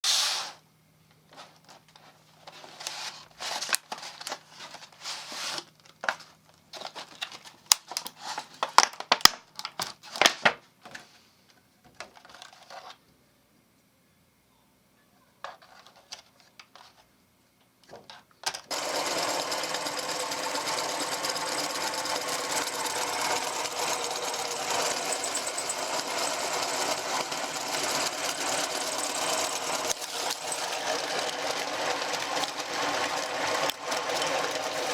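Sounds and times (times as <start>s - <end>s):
meat grinder motor running: 18.7s - 34.9s.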